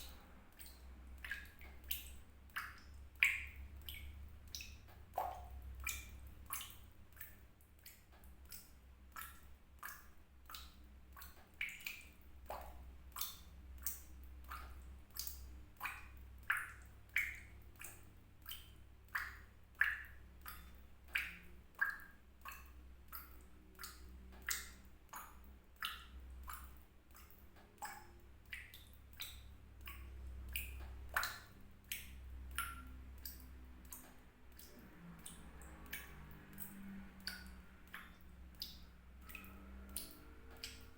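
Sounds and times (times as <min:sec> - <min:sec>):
water drops plinking: 0:09.2 - 0:40.9.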